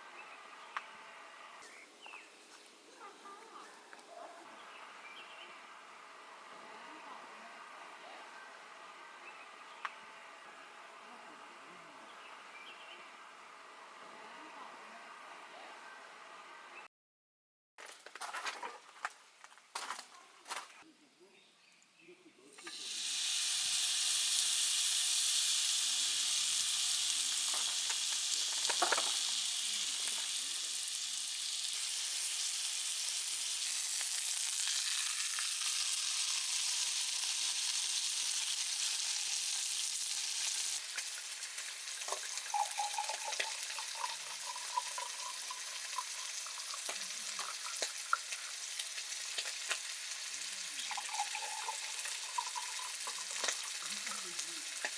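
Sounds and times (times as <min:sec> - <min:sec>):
food sizzling in hot oil: 0:22.5 - 0:54.9.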